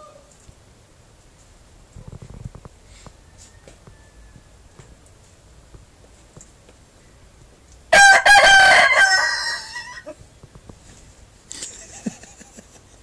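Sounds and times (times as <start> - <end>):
rooster crowing hoarsely: 3.0 - 5.0, 7.9 - 10.2.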